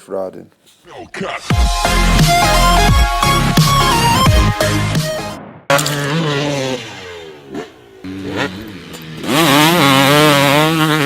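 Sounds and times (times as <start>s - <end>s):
dirt bike engine revving: 5.7s - 11.0s.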